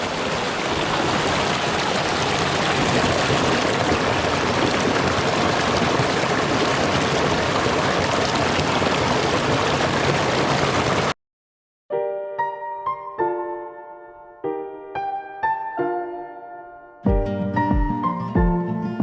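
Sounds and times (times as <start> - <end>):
mountain stream rushing: 0.0 - 11.2.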